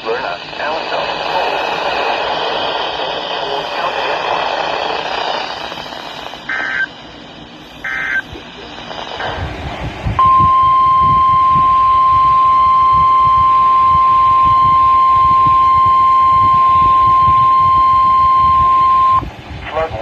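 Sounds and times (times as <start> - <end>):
low radio static: 0.0 - 20.0
steady alarm beep: 6.5 - 7.0, 7.8 - 8.4, 10.2 - 19.3.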